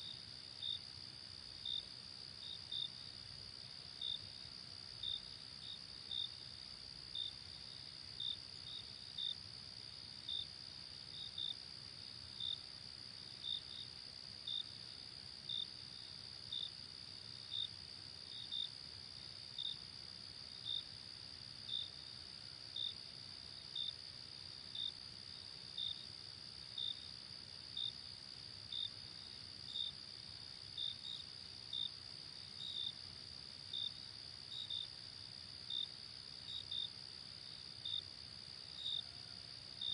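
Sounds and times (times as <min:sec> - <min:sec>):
loud cricket chirping: 0:33.7 - 0:35.9, 0:36.5 - 0:39.9.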